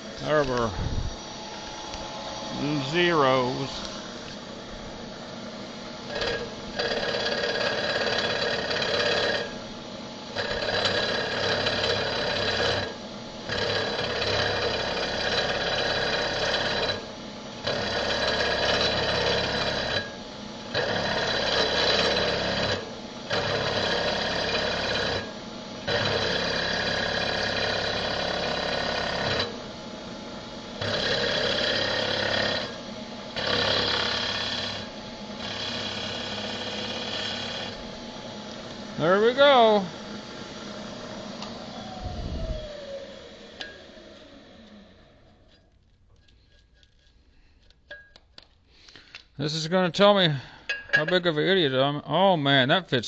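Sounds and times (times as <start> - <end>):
milling machine cutting metal: 6.0 - 9.7, 10.3 - 45.6.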